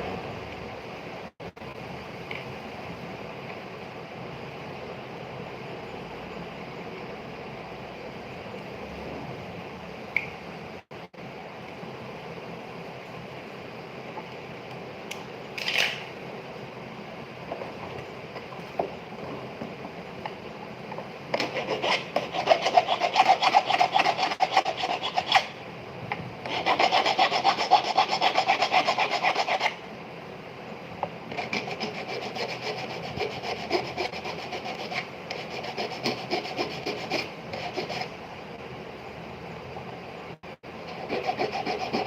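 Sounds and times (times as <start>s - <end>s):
hand file filing metal ring: 21.4s - 25.5s, 26.5s - 29.8s.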